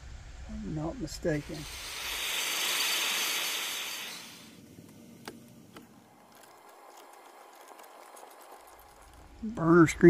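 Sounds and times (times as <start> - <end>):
hiss of escaping pressure: 1.2 - 4.6.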